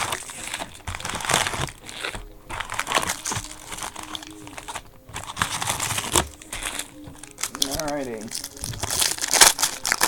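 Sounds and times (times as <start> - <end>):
foil wrappers crinkling and tearing: 0.0 - 10.0.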